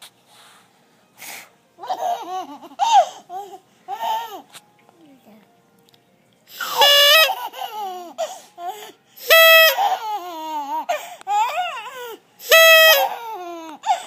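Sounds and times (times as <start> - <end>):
baby laughing: 1.8 - 4.5, 6.7 - 12.2.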